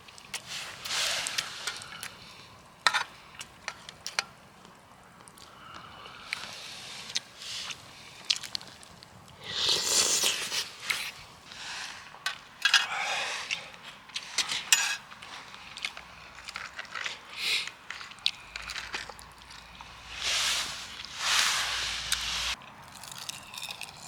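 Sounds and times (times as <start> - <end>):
scraping and rustling: 17.9 - 22.6.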